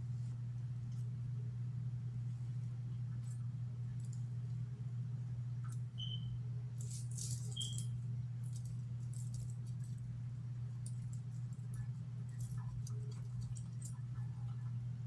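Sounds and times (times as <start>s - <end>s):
low electrical hum: 0.0s - 15.0s
light clicks and rattles: 3.1s - 4.6s, 6.8s - 14.8s.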